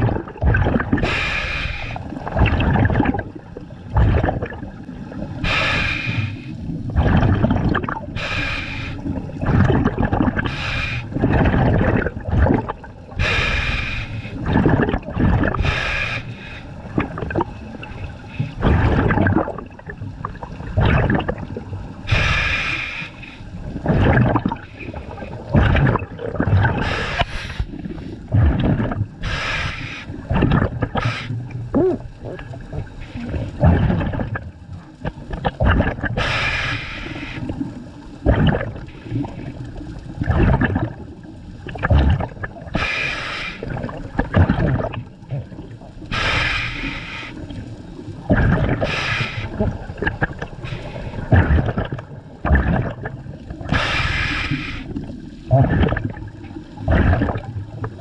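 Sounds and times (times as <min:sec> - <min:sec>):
exhaled bubbles gurgling: 0:00.0 - 0:58.0
regulator inhale hiss: 0:01.0 - 0:02.0, 0:05.4 - 0:06.6, 0:08.2 - 0:09.1, 0:10.5 - 0:11.2, 0:13.2 - 0:14.4, 0:15.6 - 0:16.8, 0:22.1 - 0:23.6, 0:26.8 - 0:28.3, 0:29.2 - 0:30.2, 0:36.2 - 0:37.7, 0:42.8 - 0:43.8, 0:46.1 - 0:47.6, 0:48.8 - 0:49.6, 0:50.6 - 0:51.3, 0:53.7 - 0:55.0.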